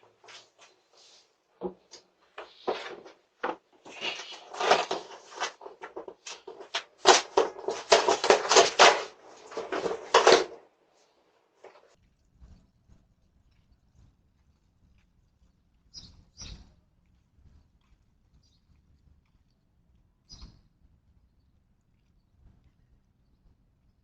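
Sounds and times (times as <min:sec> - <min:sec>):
clattering handling clicks and scrapes: 0:00.0 - 0:10.6.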